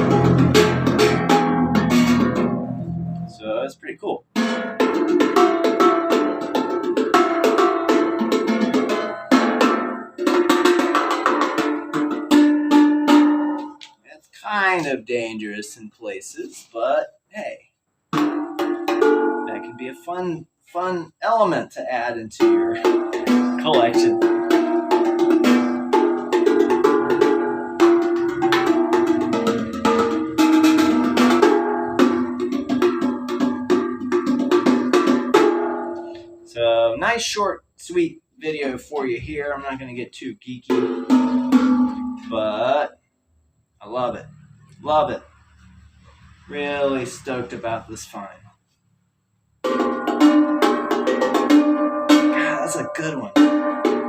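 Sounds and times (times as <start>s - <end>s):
metal ball struck like a handpan: 0.0s - 3.4s, 18.2s - 19.8s, 22.4s - 36.4s.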